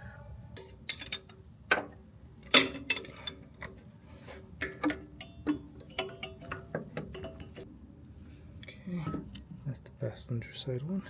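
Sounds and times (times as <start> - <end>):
metal tools clinking and knocking: 0.6 - 3.9, 4.6 - 7.6.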